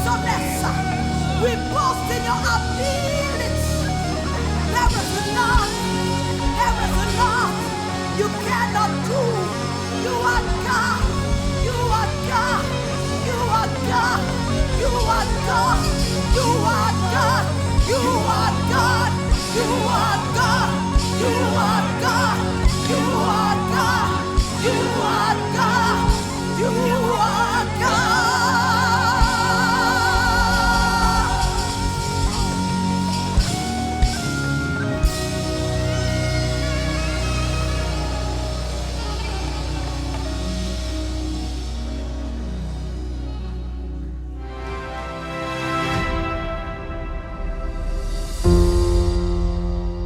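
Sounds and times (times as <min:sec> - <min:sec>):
person singing: 0:00.0 - 0:33.6
worship band playing: 0:00.0 - 0:50.0.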